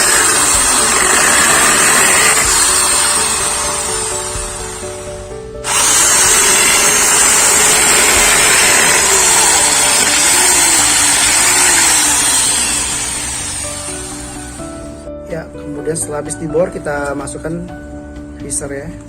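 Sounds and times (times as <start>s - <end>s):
electric drill boring into wall: 0.0s - 14.7s.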